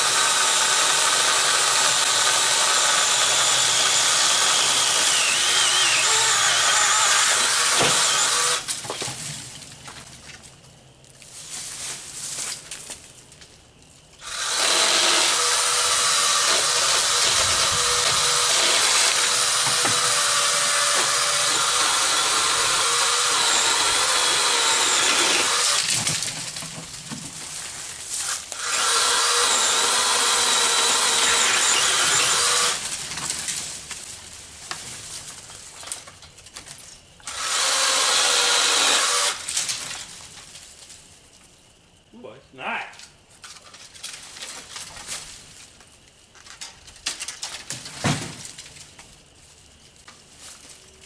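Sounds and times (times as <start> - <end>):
electric chainsaw cutting wood: 0.0 - 8.7, 14.2 - 26.0, 28.2 - 32.9, 37.2 - 39.6.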